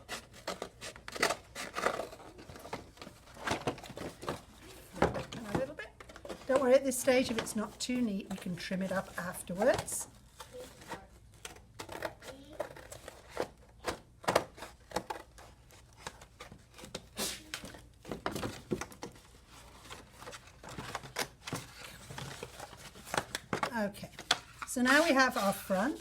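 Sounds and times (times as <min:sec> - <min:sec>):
scissors cutting cardboard: 0:00.0 - 0:04.8, 0:09.2 - 0:17.7
cardboard rustling: 0:00.0 - 0:26.0.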